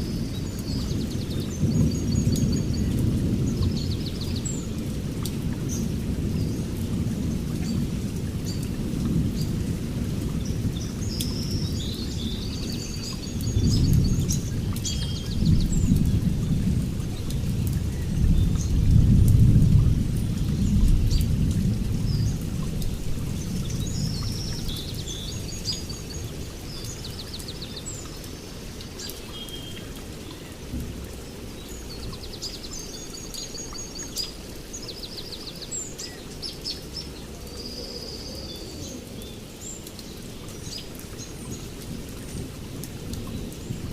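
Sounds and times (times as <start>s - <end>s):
small birds chirping: 0.0s - 9.7s, 10.3s - 19.0s, 20.1s - 43.9s
steady rain: 0.0s - 43.9s
thunder rumbling: 13.3s - 27.1s.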